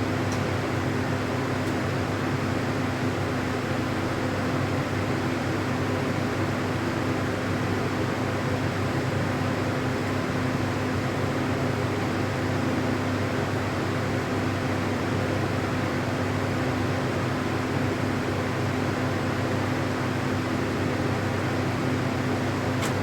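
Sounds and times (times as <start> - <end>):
mechanical hum and hiss: 0.0 - 23.0.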